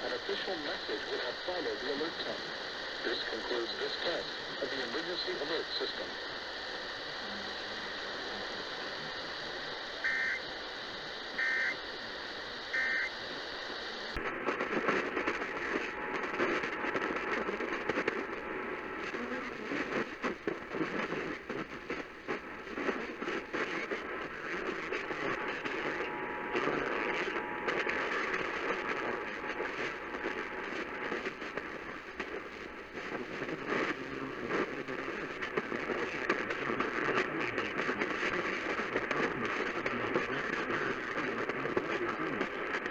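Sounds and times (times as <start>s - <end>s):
crackling radio reception: 0.0s - 42.9s
radio hiss: 0.0s - 42.9s
two-tone data burst warbles: 10.0s - 10.4s, 11.4s - 11.8s, 12.7s - 13.1s.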